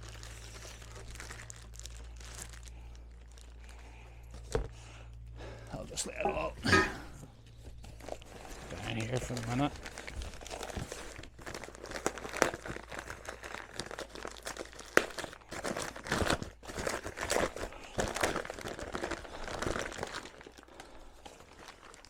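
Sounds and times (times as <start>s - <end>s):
packing paper crumpling: 0.0s - 4.8s, 7.4s - 22.0s.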